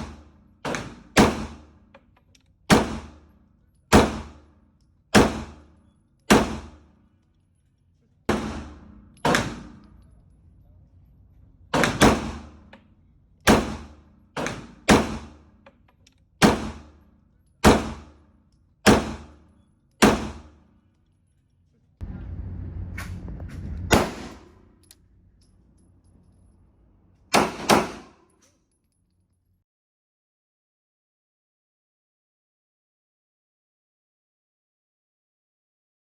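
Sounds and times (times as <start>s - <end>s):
gunshots echoing indoors: 0.0s - 7.5s, 8.3s - 10.3s, 11.3s - 21.0s, 23.8s - 25.0s, 26.6s - 28.4s
steady rushing noise: 22.0s - 24.6s.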